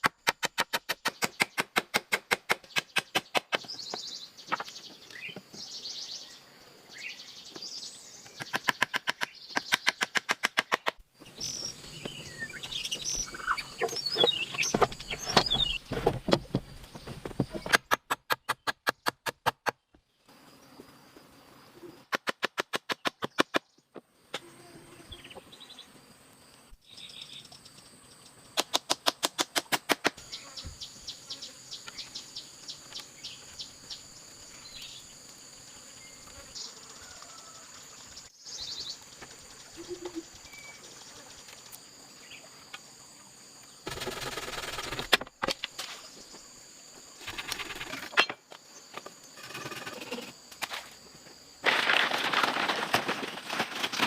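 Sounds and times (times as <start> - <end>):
high insect drone: 30.2 - 51.7
dense rustle: 51.6 - 54.0.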